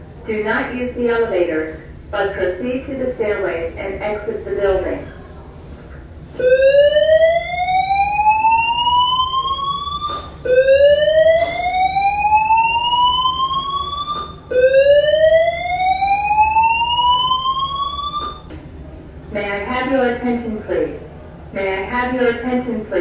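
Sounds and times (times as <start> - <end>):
fire alarm rising whoop tone: 6.4 - 18.5.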